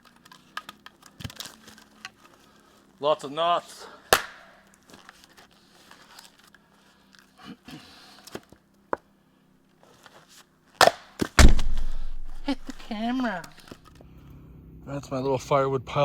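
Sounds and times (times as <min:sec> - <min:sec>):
axe striking wood: 0:04.2 - 0:04.4, 0:10.8 - 0:13.6
wood scraping and crunching: 0:11.2 - 0:13.8.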